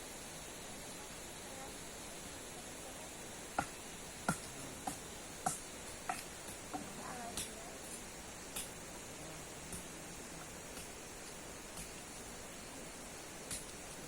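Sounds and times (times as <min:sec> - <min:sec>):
steady hiss: 0:00.0 - 0:14.0
knife chopping wood: 0:03.6 - 0:07.5.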